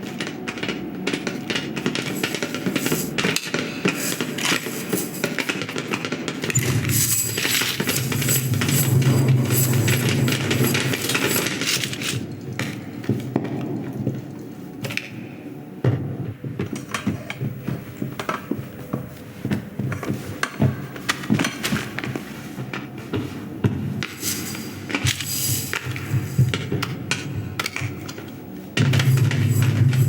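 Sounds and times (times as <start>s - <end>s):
clatter of small clicks and clinks: 6.5s - 12.2s.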